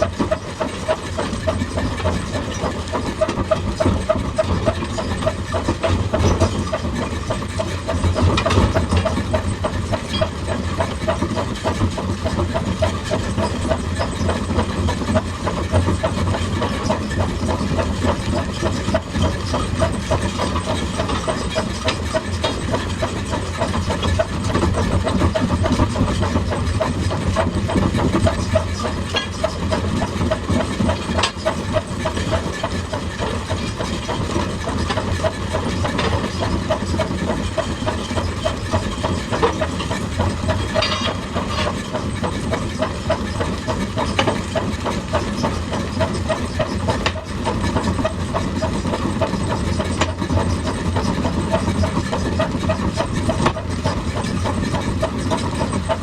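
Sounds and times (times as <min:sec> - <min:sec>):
excavator diesel engine running: 0:00.0 - 0:56.0.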